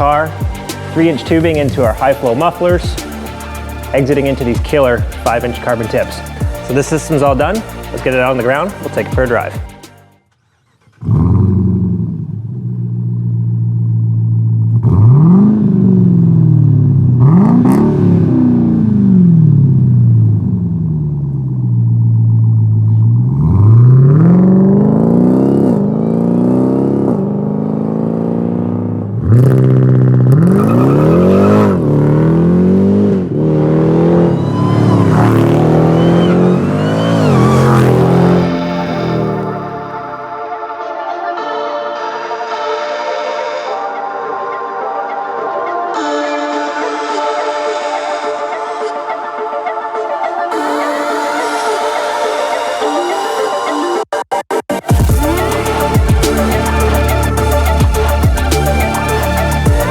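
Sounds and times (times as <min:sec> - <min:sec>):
car engine idling and revving: 0:00.0 - 0:40.3, 0:54.9 - 0:59.9.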